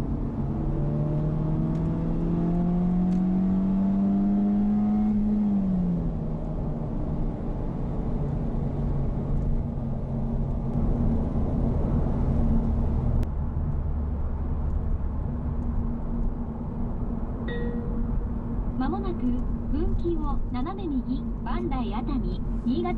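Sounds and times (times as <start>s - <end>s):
car engine running: 5.1s - 22.9s.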